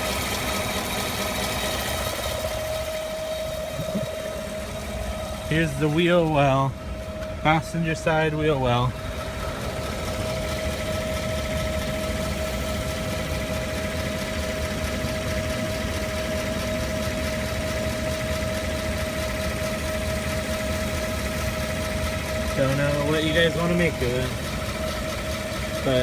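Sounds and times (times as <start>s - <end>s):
car engine idling: 0.0s - 26.0s
high whine: 2.7s - 15.6s.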